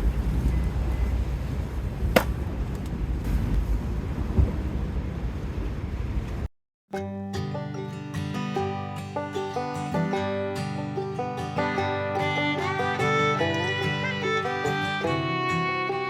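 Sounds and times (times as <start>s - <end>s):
wind buffeting microphone: 0.0s - 6.5s
banjo and guitar music: 6.9s - 16.0s.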